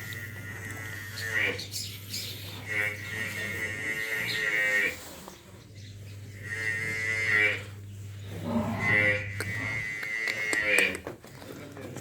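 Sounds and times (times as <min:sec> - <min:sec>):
cattle mooing: 0:00.0 - 0:01.7, 0:02.6 - 0:05.1, 0:06.4 - 0:11.1.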